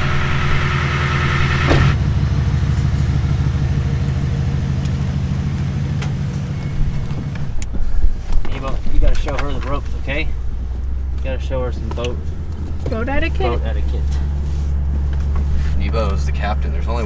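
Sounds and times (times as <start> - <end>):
outboard motor idling: 0.0 - 8.1.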